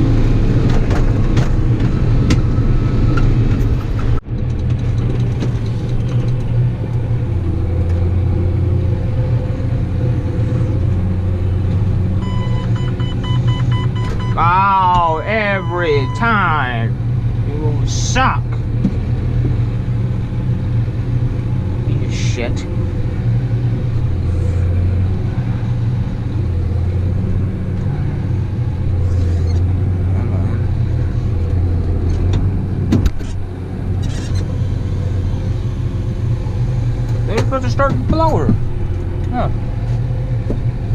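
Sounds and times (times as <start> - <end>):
farm machinery engine running: 0.0 - 40.9
repeating electronic beep: 12.2 - 14.6, 15.3 - 16.6.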